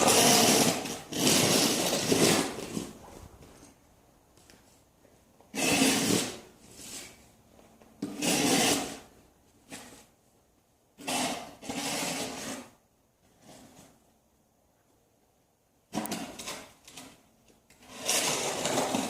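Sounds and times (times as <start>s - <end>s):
snow shovel scraping snow: 0.0s - 2.6s.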